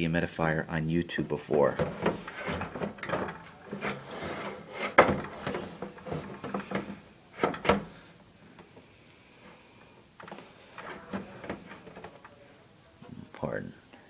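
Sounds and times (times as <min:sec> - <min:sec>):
knocks and scraping of dehumidifier: 0:01.5 - 0:08.1, 0:10.2 - 0:12.2.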